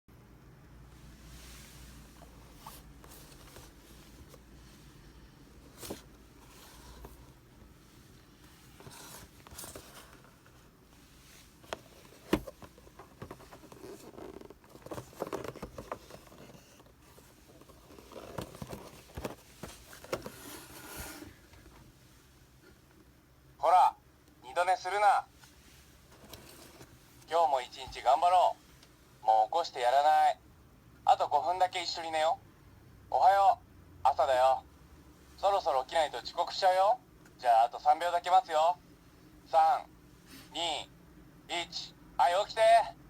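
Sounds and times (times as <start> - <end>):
faint rustling and handling: 0.9 - 23.1, 24.9 - 29.2, 40.0 - 40.6.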